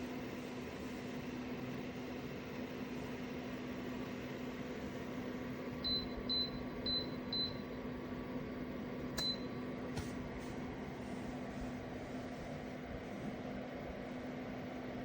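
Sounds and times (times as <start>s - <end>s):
space heater fan hum: 0.0s - 15.0s
control beeps: 5.8s - 7.7s.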